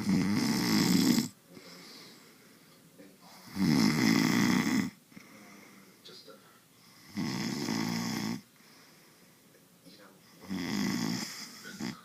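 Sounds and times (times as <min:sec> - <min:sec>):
person snoring: 0:00.0 - 0:01.4, 0:03.3 - 0:05.0, 0:07.0 - 0:08.4, 0:10.4 - 0:12.0
quiet breathing: 0:00.0 - 0:03.6, 0:04.6 - 0:12.0.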